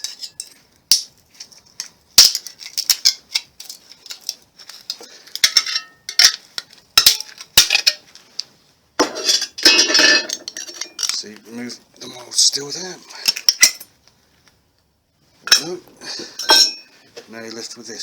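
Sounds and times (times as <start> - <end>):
metal clatter: 0.0 - 8.1, 9.0 - 11.3, 15.5 - 16.9
sharp metallic snaps and clinks: 0.0 - 8.5, 9.3 - 11.4, 13.2 - 13.9
light metal scraping: 0.0 - 13.9, 15.4 - 17.7.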